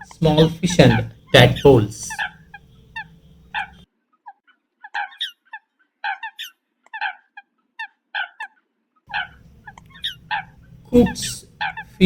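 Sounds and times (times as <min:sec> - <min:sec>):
coots calling: 0:00.0 - 0:12.0.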